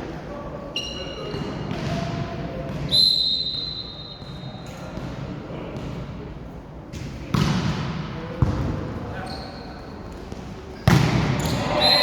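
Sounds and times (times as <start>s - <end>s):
referee's whistle: 2.9s - 4.2s, 11.8s - 12.0s.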